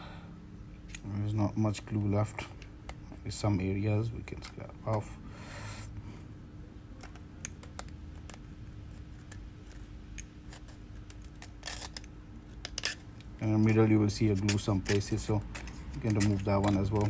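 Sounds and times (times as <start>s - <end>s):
faint steady hum: 0.0s - 17.0s
metal blade scraping adhesive: 10.5s - 17.0s.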